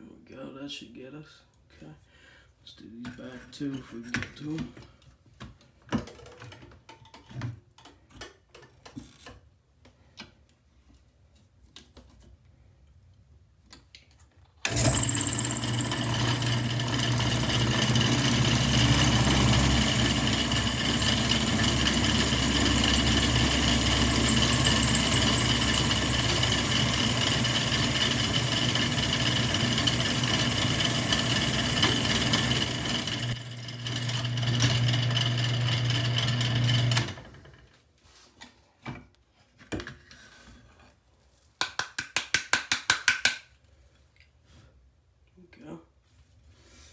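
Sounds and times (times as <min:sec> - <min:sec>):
drill press motor whining: 0:14.7 - 0:37.3.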